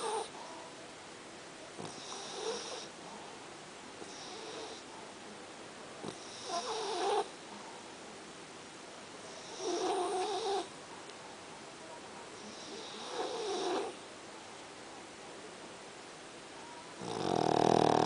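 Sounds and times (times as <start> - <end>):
dog snoring: 0.0 - 0.3, 1.8 - 2.9, 4.0 - 4.8, 6.0 - 7.3, 9.4 - 10.7, 12.4 - 14.0, 17.0 - 18.0.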